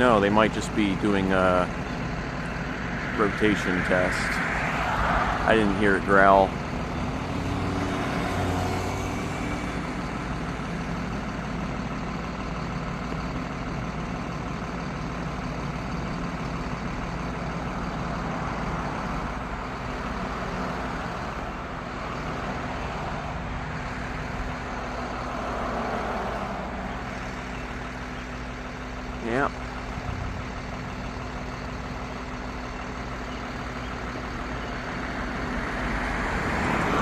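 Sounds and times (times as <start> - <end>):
traffic noise: 0.0 - 37.0
vehicle engine idling: 0.0 - 37.0.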